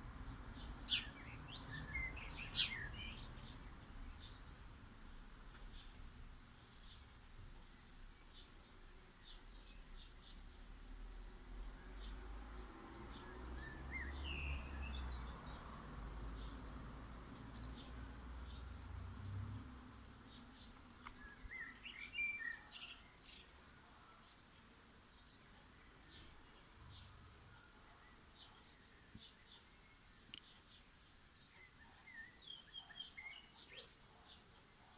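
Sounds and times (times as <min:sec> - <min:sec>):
bird warbling song: 0:00.0 - 0:04.6, 0:20.3 - 0:34.9
small birds chirping: 0:00.0 - 0:34.9.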